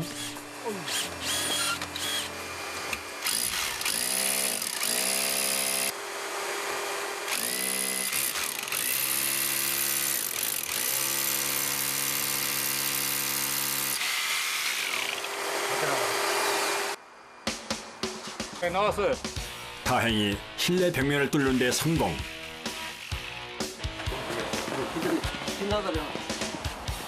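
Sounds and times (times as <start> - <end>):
electric drill boring through wall: 0.0 - 17.0, 21.6 - 23.5.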